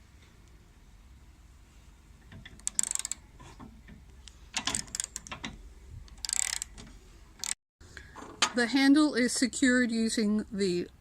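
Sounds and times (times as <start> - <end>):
ratchet pawl clicking: 2.6 - 3.2, 4.6 - 5.4, 6.1 - 6.8.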